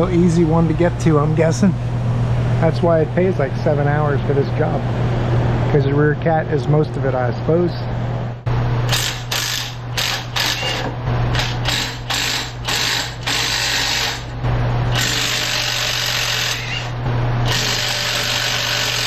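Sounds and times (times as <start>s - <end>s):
steady low hum: 0.0s - 19.0s
ratchet bursts: 8.9s - 14.3s, 14.9s - 19.0s.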